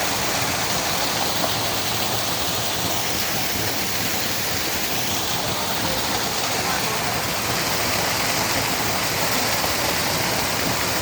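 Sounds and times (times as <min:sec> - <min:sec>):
waterfall rushing water: 0:00.0 - 0:11.0.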